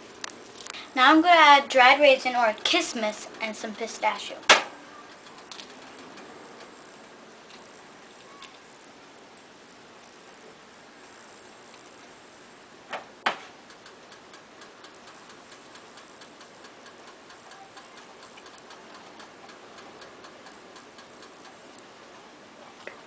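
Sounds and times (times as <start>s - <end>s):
sharp knocks: 4.5s - 4.8s
milk simmering with bubble pops: 13.6s - 22.2s.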